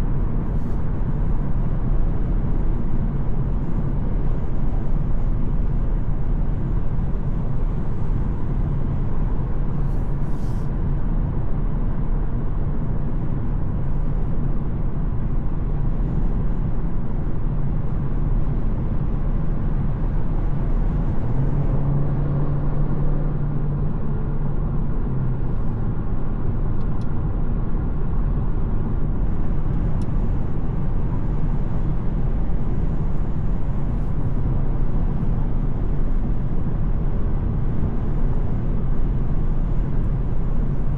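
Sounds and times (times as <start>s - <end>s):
car engine hum: 0.0s - 40.9s.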